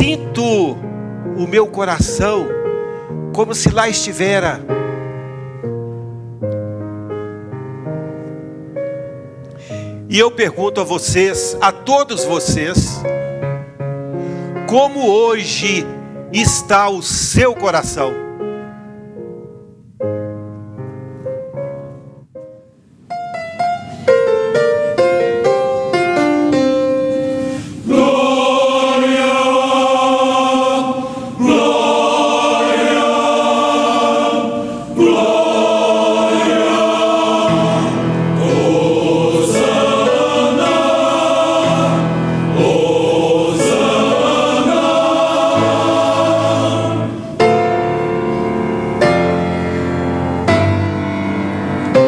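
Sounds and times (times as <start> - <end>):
piano notes climbing: 0.0 - 52.0
choir singing sustained chords: 26.9 - 52.0.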